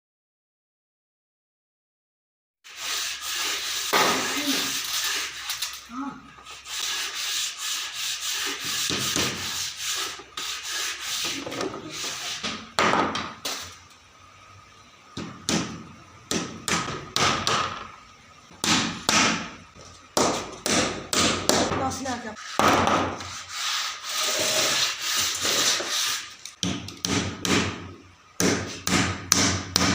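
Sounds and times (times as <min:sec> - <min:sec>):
wood being sanded by hand: 0:02.7 - 0:12.5, 0:22.2 - 0:26.4.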